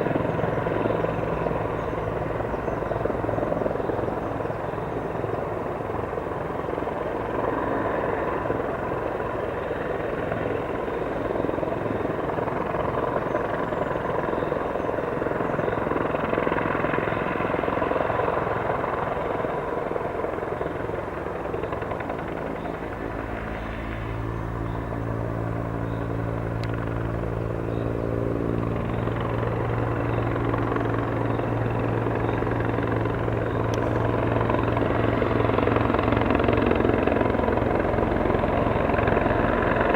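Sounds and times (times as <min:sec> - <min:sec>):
helicopter rotor and turbine: 0:00.0 - 0:39.9.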